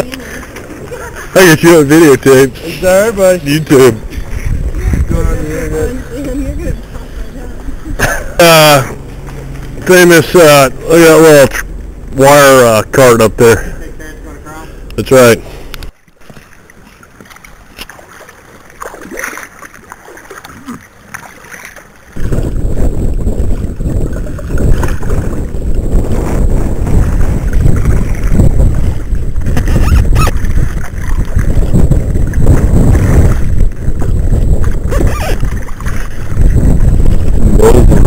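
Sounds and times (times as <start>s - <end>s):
wind buffeting microphone: 0.0s - 20.5s, 21.9s - 38.0s
faint water: 0.0s - 38.0s.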